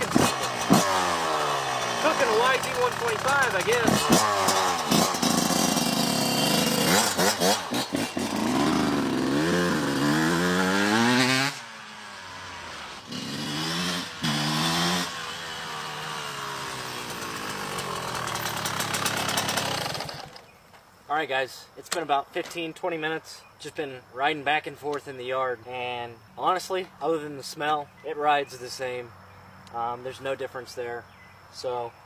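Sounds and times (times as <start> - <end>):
dirt bike engine revving: 0.0 - 20.6.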